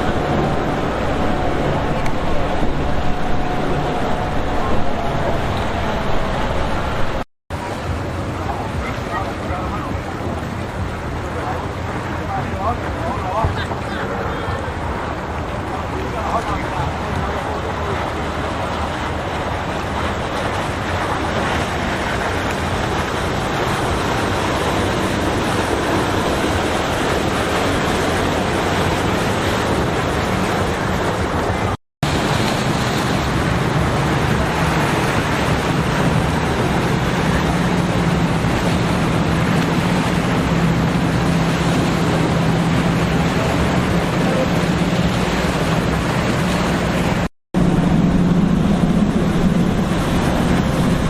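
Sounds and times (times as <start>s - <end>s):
wind rushing: 0.0s - 7.3s, 18.4s - 51.0s
powerboat engines: 0.0s - 51.0s
surf: 0.0s - 51.0s.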